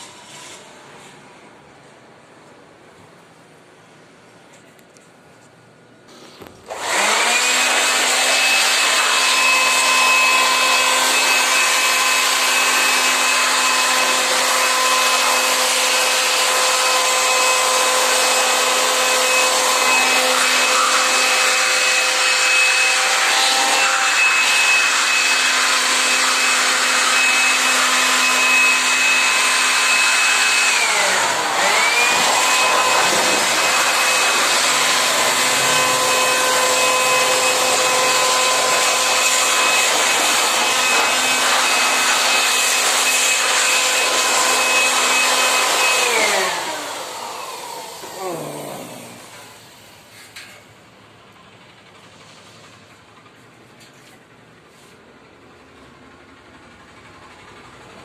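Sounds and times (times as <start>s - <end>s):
pressure washer motor whine: 6.7s - 50.1s.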